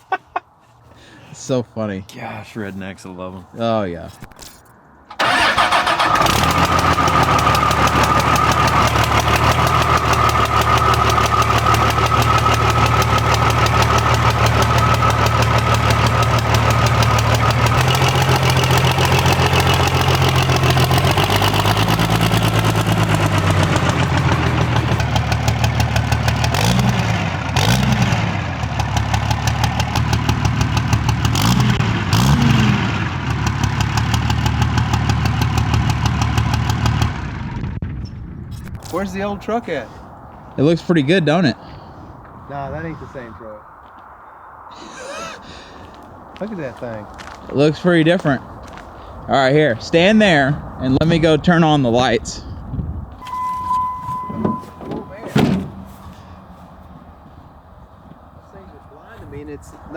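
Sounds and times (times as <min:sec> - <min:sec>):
diesel engine revving: 0:05.1 - 0:37.7, 0:53.2 - 0:58.6
diesel engine idling: 0:05.2 - 0:37.7, 0:53.2 - 0:59.9.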